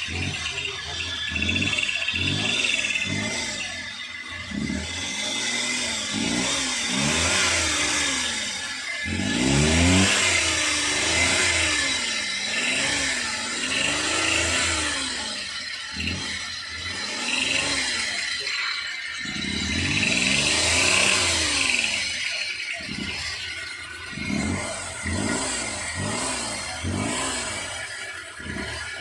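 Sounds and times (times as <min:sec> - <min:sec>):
engine revving: 0:00.0 - 0:29.0.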